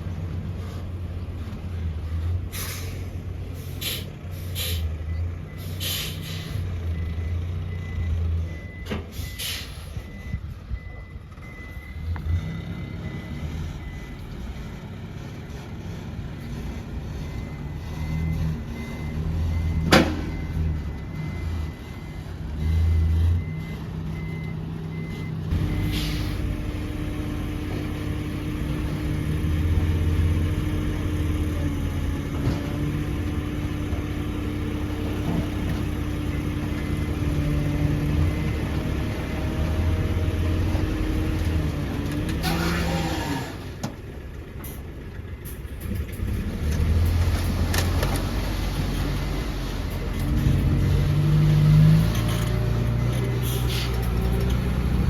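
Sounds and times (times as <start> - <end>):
heavy diesel machinery running: 0.0 - 55.0
reversing alarm beeping: 5.1 - 14.7, 16.4 - 28.5.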